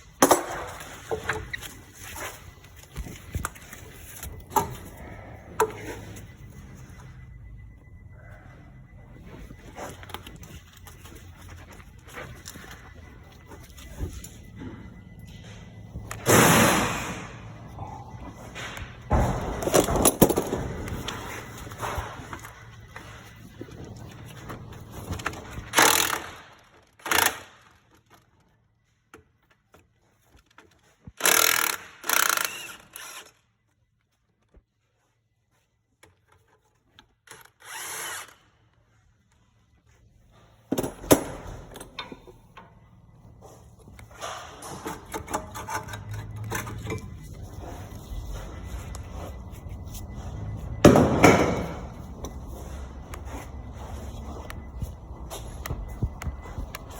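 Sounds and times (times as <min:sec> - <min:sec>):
tools and metal parts clattering: 0:00.0 - 0:07.3, 0:09.0 - 0:33.4, 0:40.3 - 0:56.9
power drill running: 0:25.8 - 0:26.4, 0:31.2 - 0:33.3, 0:37.6 - 0:38.4.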